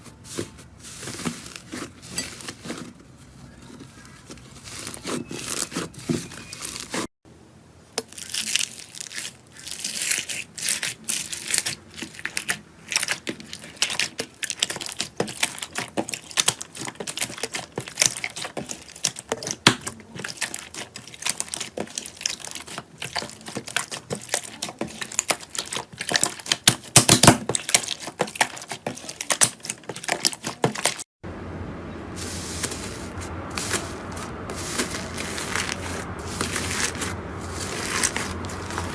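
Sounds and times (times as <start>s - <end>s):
slime crackling and popping: 8.0s - 31.0s.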